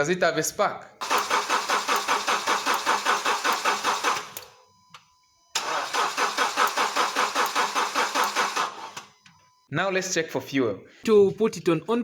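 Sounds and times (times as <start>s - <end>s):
engine cranking without starting: 1.0s - 4.5s, 5.6s - 9.2s.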